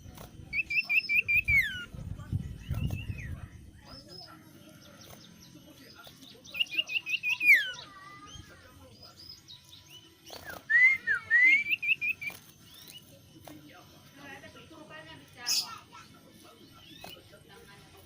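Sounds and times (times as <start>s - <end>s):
songbird whistled phrases: 0.5s - 1.9s, 6.4s - 8.5s, 9.9s - 13.1s.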